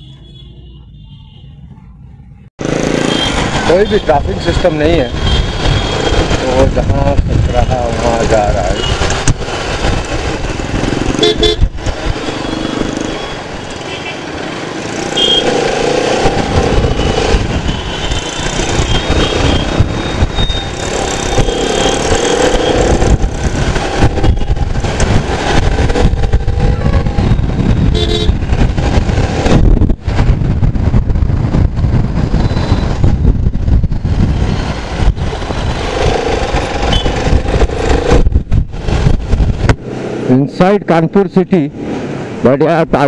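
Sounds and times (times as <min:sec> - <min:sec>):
vehicle horns: 0:00.0 - 0:01.8, 0:02.9 - 0:04.3, 0:11.2 - 0:11.7, 0:12.3 - 0:14.3, 0:15.0 - 0:23.2, 0:24.0 - 0:24.9, 0:26.6 - 0:28.5, 0:36.7 - 0:37.4
surrounding traffic: 0:00.0 - 0:43.0
motorcycle engine: 0:02.6 - 0:40.4
wind buffeting microphone: 0:03.4 - 0:12.4, 0:15.7 - 0:40.3.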